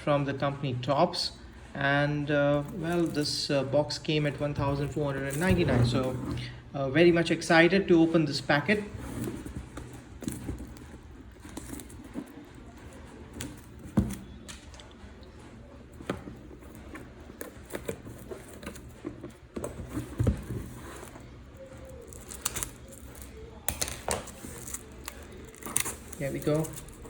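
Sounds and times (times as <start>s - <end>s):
cardboard box being handled: 2.6s - 3.3s, 4.2s - 6.5s, 8.7s - 27.0s.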